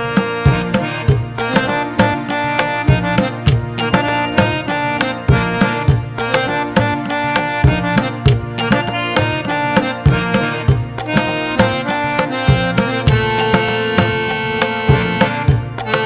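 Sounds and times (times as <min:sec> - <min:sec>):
sustained melodic notes: 0:00.0 - 0:16.0
tabla drumming: 0:00.0 - 0:16.0.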